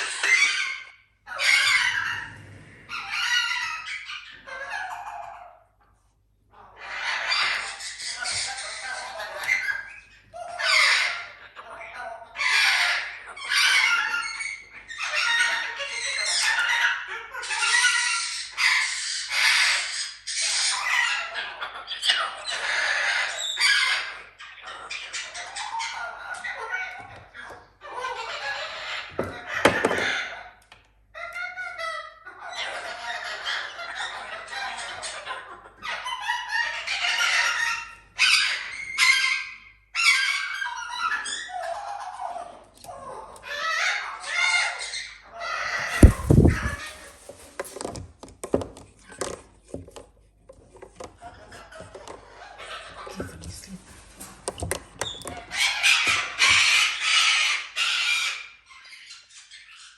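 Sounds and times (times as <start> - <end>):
parrot squawking: 0.0 - 5.6, 43.5 - 47.5
parrots squawking: 0.0 - 5.8, 6.5 - 27.1, 27.8 - 30.5, 31.2 - 47.8, 55.4 - 59.9.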